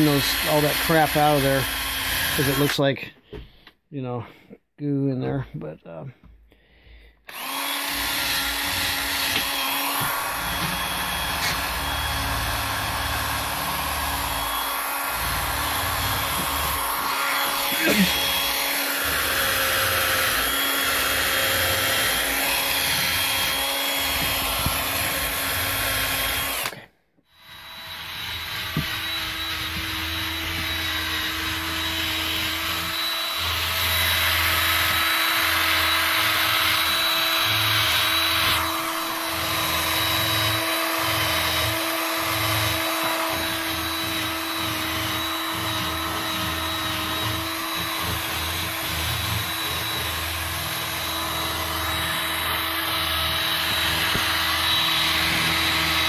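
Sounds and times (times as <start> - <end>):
power tool motor whine: 0.0 - 2.8, 7.3 - 56.0.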